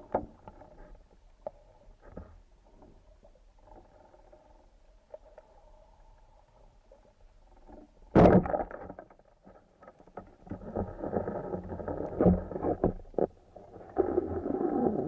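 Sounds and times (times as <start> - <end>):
sharp knock underwater: 8.1 - 8.8.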